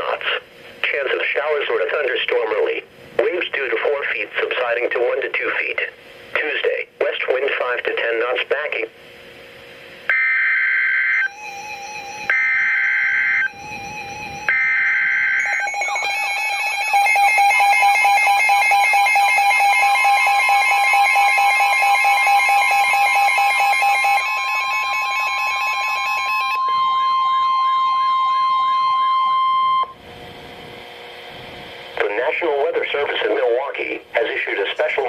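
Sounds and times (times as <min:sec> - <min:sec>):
steady warning tone: 0:07.1 - 0:35.0
alert receiver alarms beeping: 0:10.1 - 0:30.0
harsh digital data bursts: 0:11.3 - 0:26.4.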